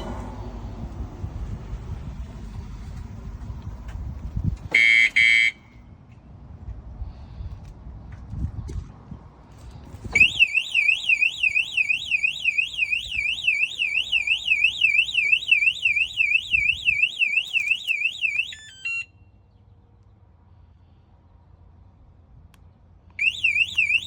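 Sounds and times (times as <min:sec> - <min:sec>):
bike alarm siren warbling: 0:10.2 - 0:19.1, 0:23.2 - 0:24.0.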